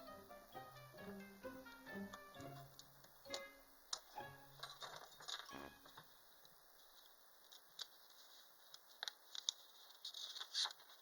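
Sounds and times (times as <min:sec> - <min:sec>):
faint rustling: 0:04.6 - 0:11.0.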